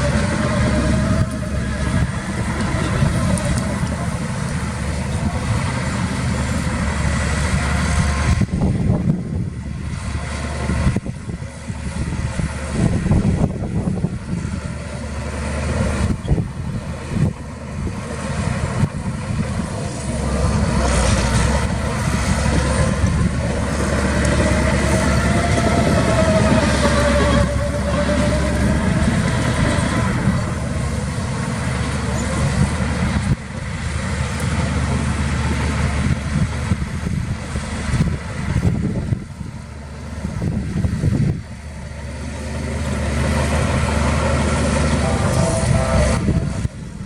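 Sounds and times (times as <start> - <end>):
whining tone: 0.0 - 9.6, 18.7 - 34.9, 40.5 - 47.0
diesel machinery engine: 0.0 - 47.0.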